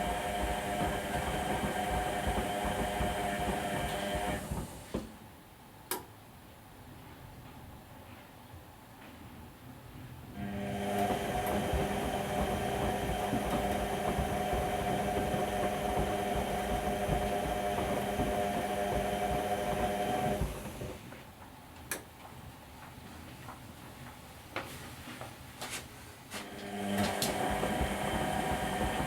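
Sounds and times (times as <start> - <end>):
washing machine motor hum: 0.0 - 5.3, 10.4 - 21.2, 26.3 - 29.0.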